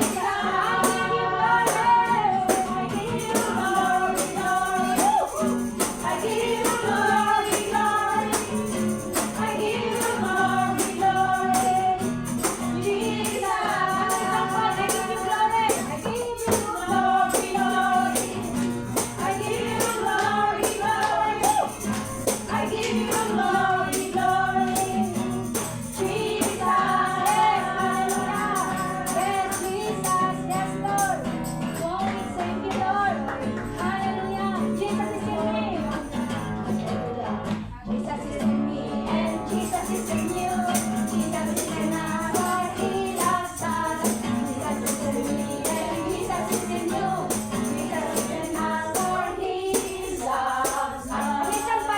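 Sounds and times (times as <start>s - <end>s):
tambourine jingling: 0.0s - 37.2s, 39.2s - 51.9s
voices singing worship song: 0.0s - 51.9s.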